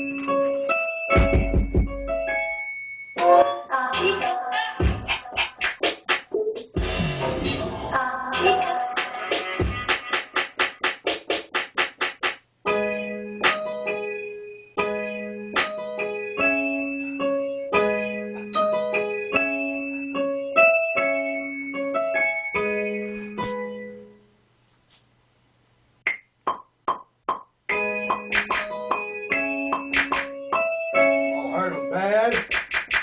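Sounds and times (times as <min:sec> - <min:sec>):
electric piano chords: 0:00.0 - 0:03.7, 0:12.7 - 0:24.2, 0:26.5 - 0:32.3.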